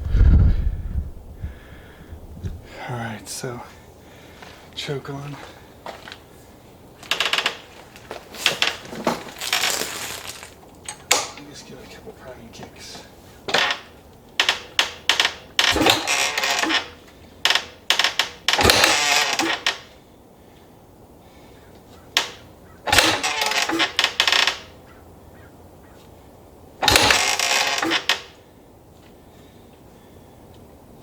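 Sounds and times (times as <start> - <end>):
motorcycle kickstarter clatter: 7.0 - 11.5, 13.4 - 20.0, 22.0 - 25.0, 26.8 - 28.5
kick lever clicks: 14.4 - 16.9, 17.5 - 19.8, 22.2 - 24.6, 26.8 - 28.3
engine spinning over: 14.5 - 19.9, 22.2 - 24.8, 26.8 - 28.4.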